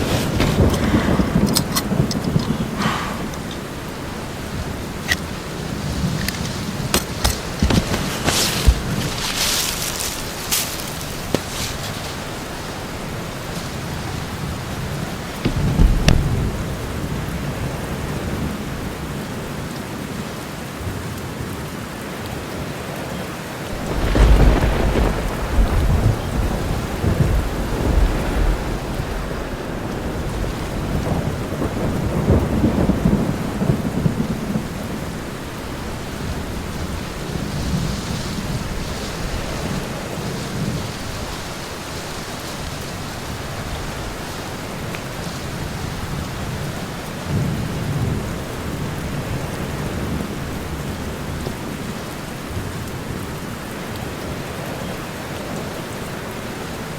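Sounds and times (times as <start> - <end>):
sharp thunder crack: 0.0 - 17.7, 23.7 - 34.7
thunder rolling: 0.0 - 18.8, 23.7 - 41.8
steady rain: 0.0 - 56.9.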